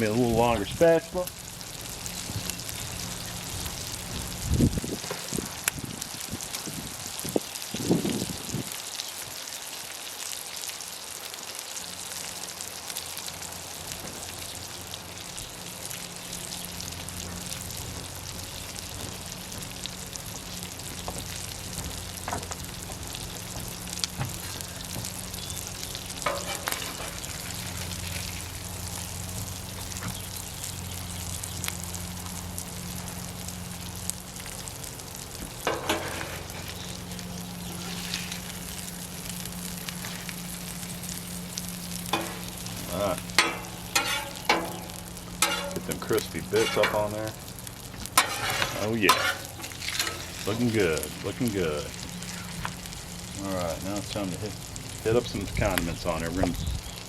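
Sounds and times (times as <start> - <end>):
food sizzling on a griddle: 0.0 - 57.0
metal spatula knocking and scraping: 43.4 - 44.8, 45.4 - 45.9, 48.2 - 50.2.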